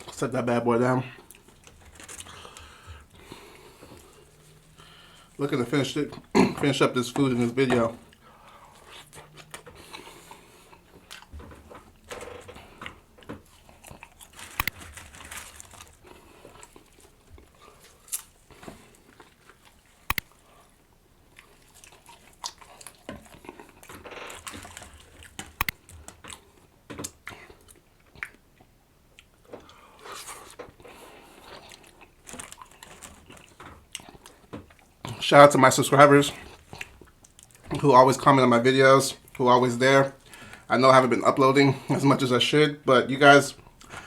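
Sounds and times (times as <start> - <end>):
person chewing food: 1.1 - 5.4, 8.0 - 35.2, 36.3 - 37.9, 43.6 - 44.0
sharp clicks: 20.1 - 20.3, 25.6 - 25.8.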